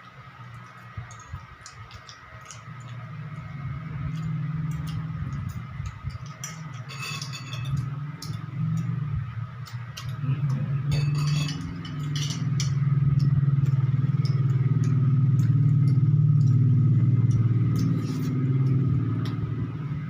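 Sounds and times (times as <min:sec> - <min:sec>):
low motor hum: 0:00.0 - 0:20.0
chewing clicks: 0:00.5 - 0:06.5, 0:07.8 - 0:09.0, 0:12.0 - 0:19.4
utensils clinking on a plate: 0:04.1 - 0:08.9, 0:09.6 - 0:12.9.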